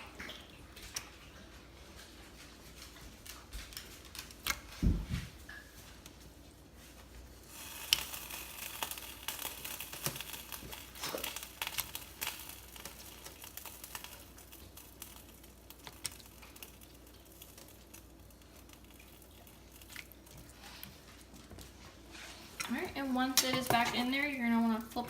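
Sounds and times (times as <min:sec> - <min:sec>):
food sizzling in a pan: 0:07.5 - 0:20.8
utensils clicking and tapping: 0:22.6 - 0:25.0.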